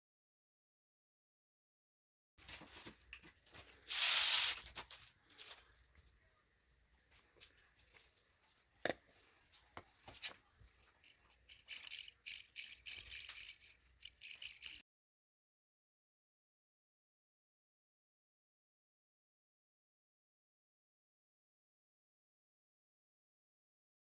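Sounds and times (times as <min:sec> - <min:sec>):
metal parts scraping hiss: 0:03.9 - 0:04.6
metal parts rattling: 0:11.0 - 0:14.8.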